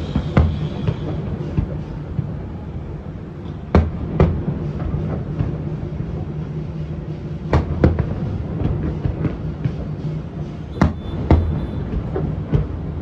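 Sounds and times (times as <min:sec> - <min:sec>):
distant fireworks bangs: 0:10.7 - 0:12.7.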